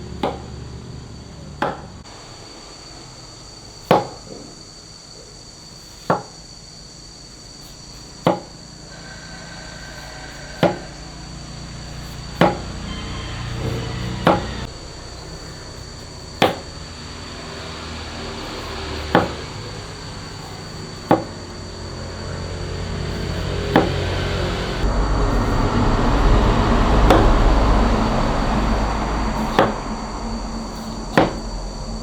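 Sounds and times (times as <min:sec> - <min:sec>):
sharp knocks: 0:00.2 - 0:00.6, 0:01.6 - 0:02.0, 0:10.6 - 0:10.9, 0:12.0 - 0:12.8, 0:13.5 - 0:14.7, 0:15.3 - 0:16.8, 0:18.4 - 0:19.5, 0:20.4 - 0:21.4, 0:22.9 - 0:28.3, 0:29.2 - 0:30.0, 0:30.6 - 0:31.5
low steady hum: 0:11.5 - 0:32.0.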